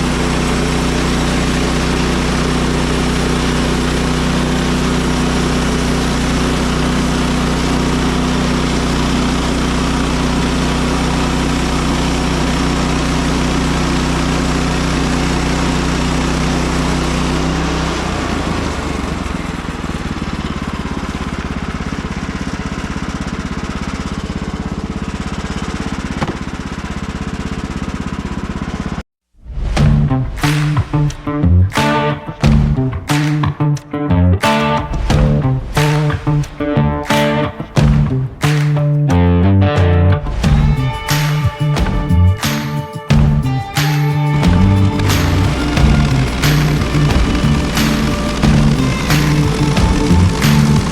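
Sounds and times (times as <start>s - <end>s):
sawmill gasoline engine running: 0.0s - 29.0s, 40.4s - 50.9s.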